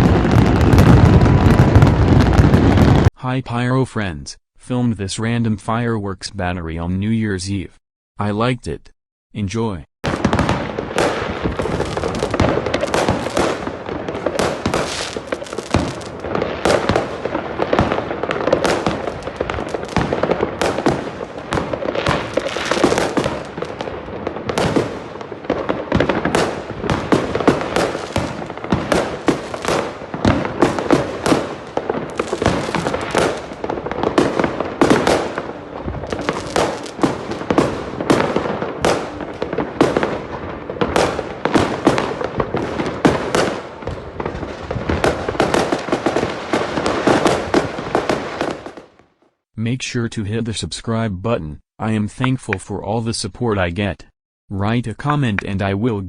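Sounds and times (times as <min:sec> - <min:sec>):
fireworks shots and bangs: 0:00.0 - 0:03.1, 0:10.0 - 0:49.1.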